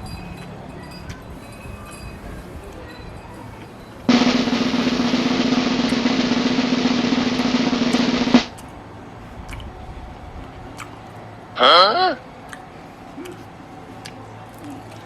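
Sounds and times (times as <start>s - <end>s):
snare drum roll: 4.1s - 8.5s.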